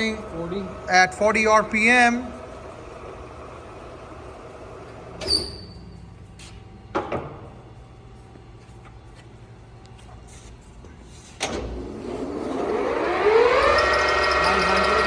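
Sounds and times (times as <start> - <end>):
lathe humming: 0.0 - 5.2, 11.7 - 15.0.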